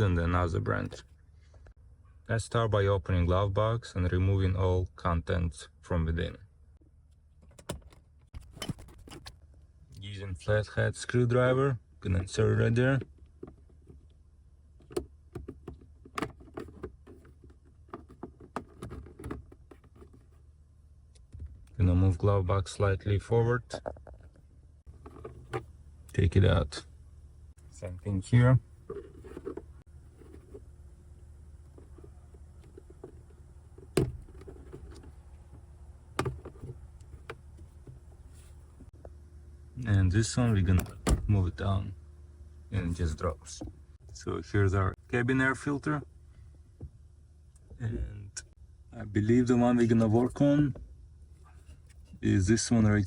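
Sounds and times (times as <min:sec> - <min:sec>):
plastic glove box clicks and knocks: 0:36.1 - 0:38.0.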